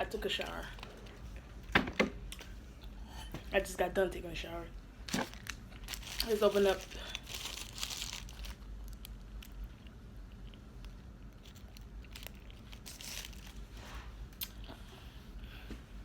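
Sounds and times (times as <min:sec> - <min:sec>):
food wrapping crinkling: 0:05.0 - 0:14.6
person chewing food: 0:07.1 - 0:13.6.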